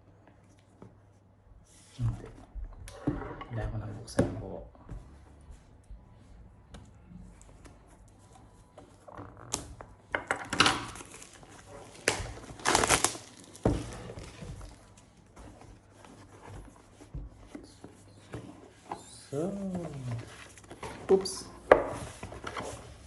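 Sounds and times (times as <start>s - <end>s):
packaging crinkling and rustling: 10.6s - 16.0s.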